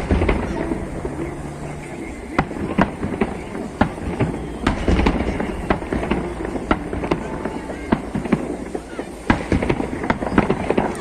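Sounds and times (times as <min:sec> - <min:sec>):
low rumble: 0:00.0 - 0:08.2
fireworks bangs and crackles: 0:00.0 - 0:11.0.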